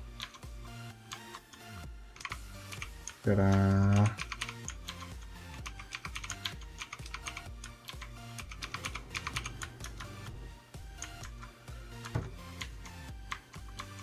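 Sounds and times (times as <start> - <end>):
background music: 0.0 - 14.0
mechanical keyboard clicking: 0.2 - 0.4, 2.2 - 10.3, 12.0 - 14.0.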